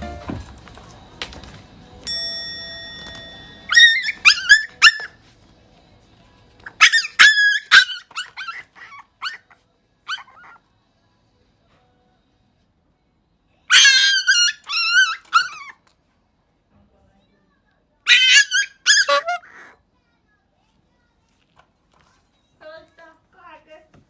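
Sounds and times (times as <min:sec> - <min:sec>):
puppy whimpering: 0:03.7 - 0:05.2, 0:06.6 - 0:09.5, 0:10.1 - 0:10.6, 0:13.7 - 0:15.8, 0:18.1 - 0:19.8
puppy yipping: 0:03.7 - 0:05.2, 0:06.6 - 0:10.6, 0:13.7 - 0:15.8, 0:18.1 - 0:19.8.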